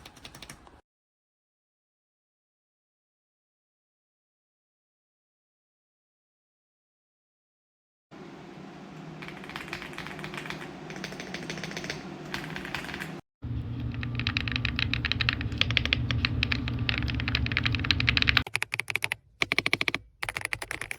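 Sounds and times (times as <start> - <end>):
mechanical keyboard typing: 0.0 - 0.7, 9.2 - 13.2, 13.9 - 20.9
steady low hum: 8.2 - 18.4.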